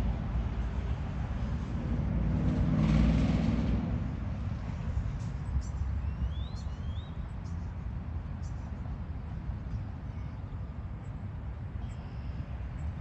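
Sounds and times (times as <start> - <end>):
vehicle passing: 0.0 - 5.1
road traffic rumble: 0.0 - 13.0.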